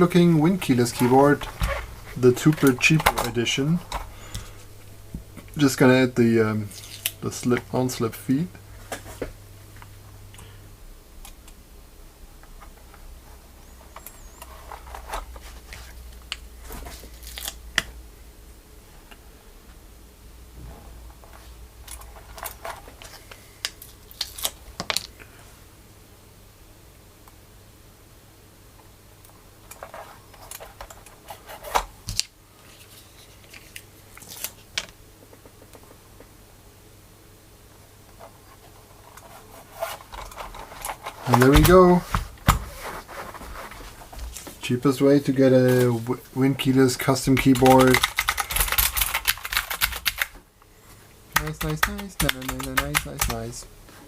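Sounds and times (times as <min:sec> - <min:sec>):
keyboard clicks and knocks: 0:41.3 - 0:42.0, 0:47.3 - 0:50.3, 0:51.4 - 0:53.6.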